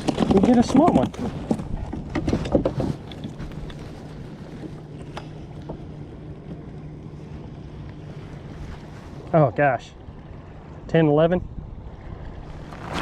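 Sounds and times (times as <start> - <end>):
clicks and knocks from handling gear: 0.0 - 5.8.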